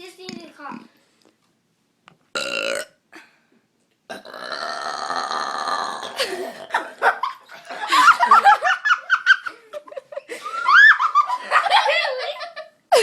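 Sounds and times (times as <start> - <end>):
girl burping: 2.4 - 3.3, 4.1 - 7.0
laughter: 6.2 - 13.0.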